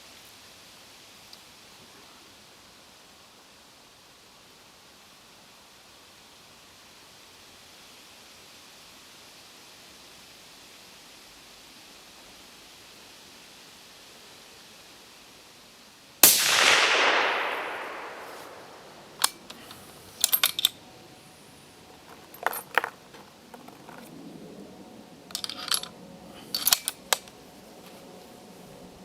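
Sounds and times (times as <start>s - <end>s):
suppressed rifle shot: 16.2s - 20.7s
rifle bolt metallic clicks: 16.2s - 20.8s, 25.3s - 27.4s.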